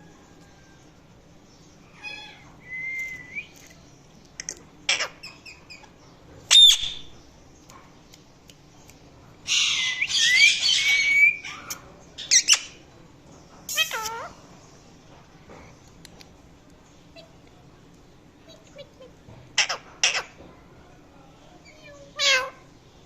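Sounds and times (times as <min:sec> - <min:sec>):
parrot calling and squawking: 0:04.9 - 0:05.8, 0:06.5 - 0:07.0, 0:09.5 - 0:12.8, 0:13.7 - 0:14.4, 0:18.5 - 0:20.4, 0:21.7 - 0:22.6.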